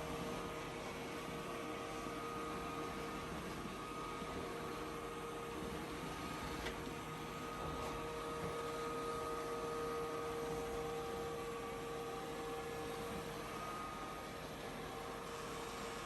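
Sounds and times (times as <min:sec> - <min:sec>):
faint whining tones: 0:00.1 - 0:16.0.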